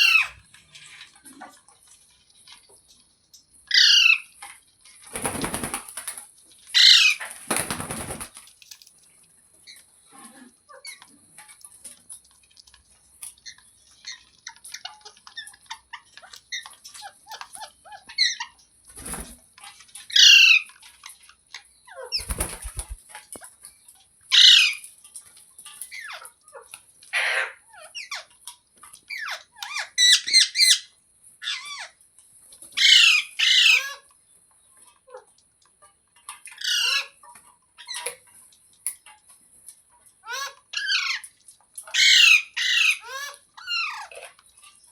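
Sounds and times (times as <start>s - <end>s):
parrot squawks: 0.0s - 0.4s, 6.8s - 7.3s, 27.1s - 28.1s, 41.9s - 44.1s
parrots chattering and chirping: 0.0s - 0.4s, 3.7s - 4.2s, 5.2s - 8.3s, 20.0s - 20.7s, 21.9s - 23.0s, 24.3s - 24.8s, 25.9s - 28.3s, 29.1s - 32.0s, 32.8s - 34.0s, 36.5s - 38.3s, 40.2s - 44.8s
rustling: 22.2s - 23.1s.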